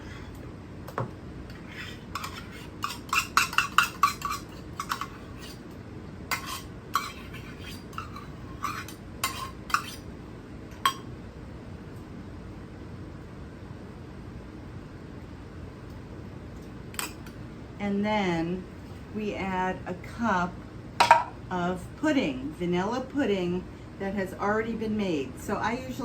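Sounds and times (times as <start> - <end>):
utensil clinking in a bowl: 2.2 - 5.6.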